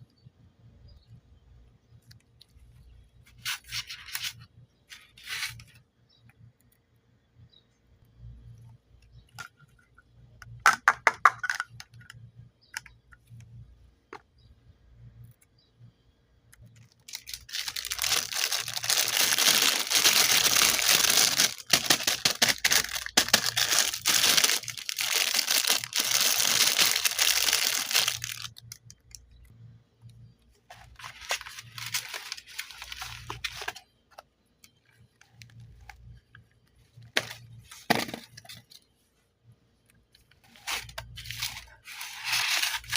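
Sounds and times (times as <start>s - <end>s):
packaging rustling: 16.8s - 28.7s, 30.7s - 33.8s, 40.4s - 42.9s
packaging tearing and crinkling: 16.8s - 28.8s, 30.7s - 33.8s, 40.5s - 42.9s.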